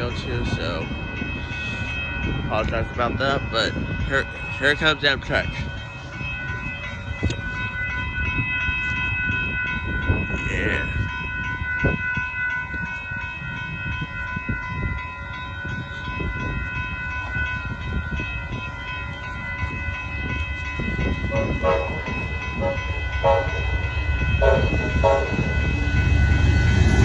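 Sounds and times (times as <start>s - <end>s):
train rumbling on rails: 0.0s - 27.0s
steady high-pitched tone: 15.0s - 27.0s.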